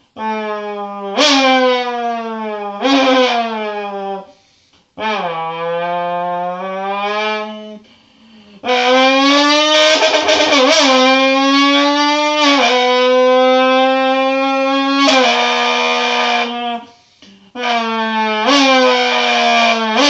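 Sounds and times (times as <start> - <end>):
person imitating car engine: 5.4 - 20.0.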